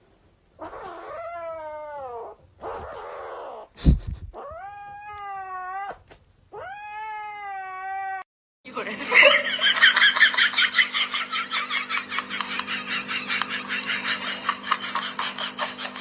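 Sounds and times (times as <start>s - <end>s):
cat yowling: 0.6s - 3.6s, 4.4s - 8.2s.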